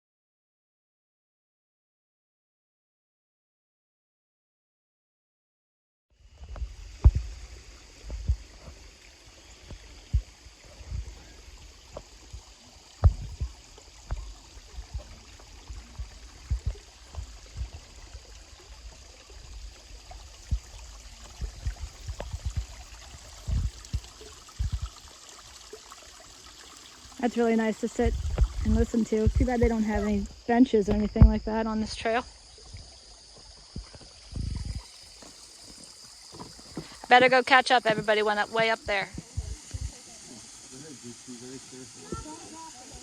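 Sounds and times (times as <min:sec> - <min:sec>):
creek water running: 0:06.2 - 0:43.0
thumps on microphone: 0:06.4 - 0:07.4, 0:13.0 - 0:15.2, 0:16.0 - 0:17.8, 0:28.0 - 0:30.2.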